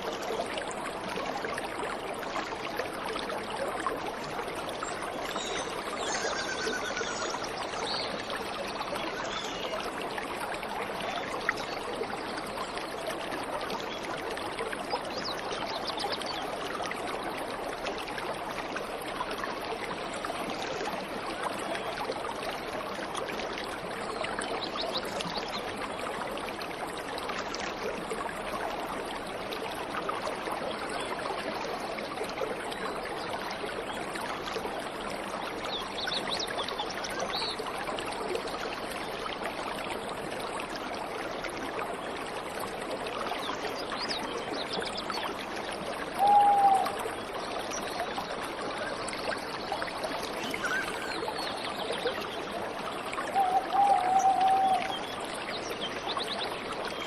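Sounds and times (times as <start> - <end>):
faint bird chirps: 5.4 - 8.1, 50.4 - 51.7.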